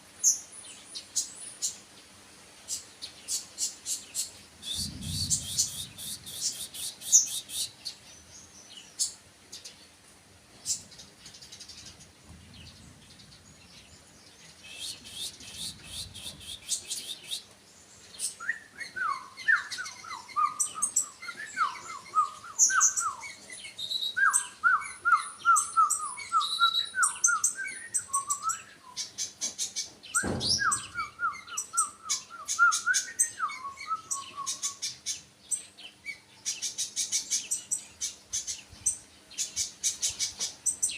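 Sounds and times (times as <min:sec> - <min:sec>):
songbird singing: 0:00.2 - 0:40.9
thump: 0:30.2 - 0:30.9.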